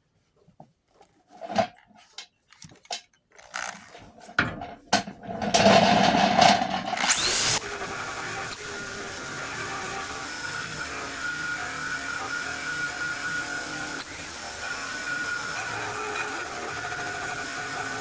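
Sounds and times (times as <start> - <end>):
power tool whining: 7.0 - 18.0
steady hum: 7.0 - 18.0.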